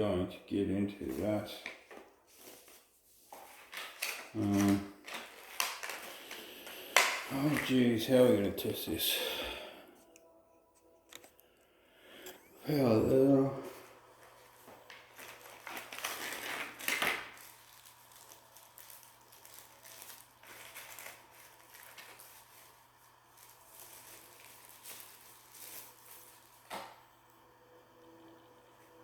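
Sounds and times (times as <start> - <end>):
plastic packaging crinkling: 1.0 - 8.9, 13.3 - 27.1.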